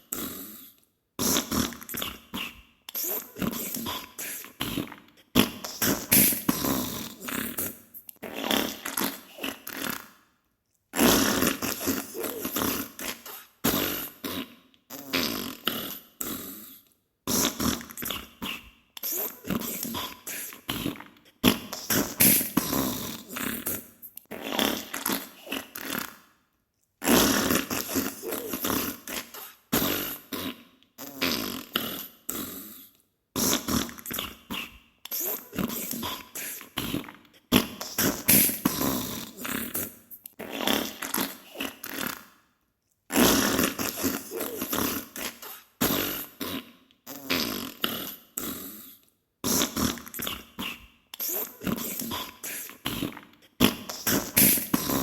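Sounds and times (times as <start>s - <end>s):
wet spluttering farts: 37.6s - 42.2s, 53.6s - 55.0s.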